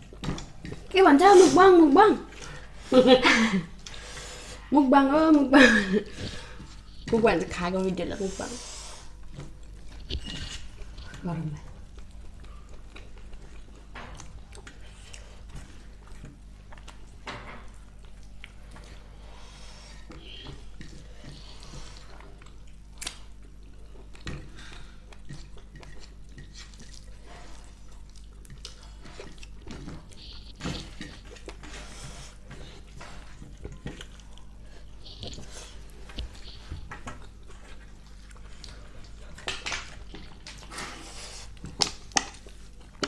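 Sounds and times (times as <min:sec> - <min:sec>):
steady low hum: 0:00.0 - 0:43.0
wet chewing: 0:09.0 - 0:43.0.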